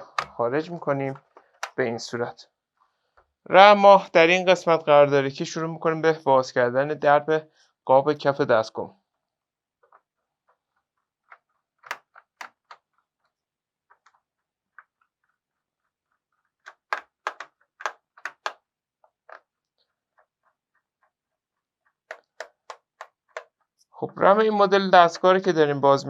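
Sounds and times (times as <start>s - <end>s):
screwdriver clicking on screws: 16.7s - 18.6s, 22.1s - 23.5s.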